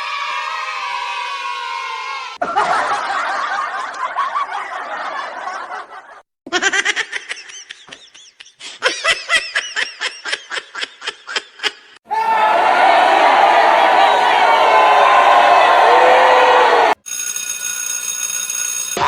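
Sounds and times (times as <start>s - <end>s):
people laughing together: 2.4s - 12.0s
person snickering: 6.5s - 12.0s.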